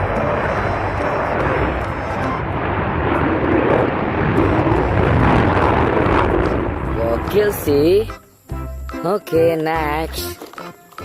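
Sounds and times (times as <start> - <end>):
jet engine roar: 0.0 - 7.8.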